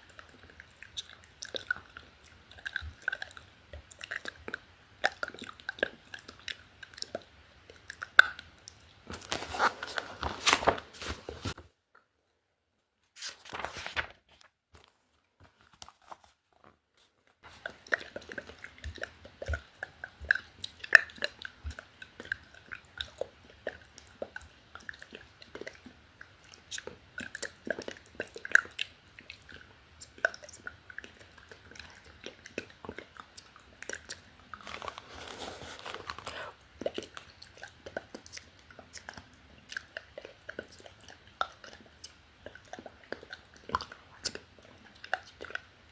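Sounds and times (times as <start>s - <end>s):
wet lip and tongue clicks: 0.0s - 8.9s, 17.6s - 34.3s, 36.8s - 45.7s.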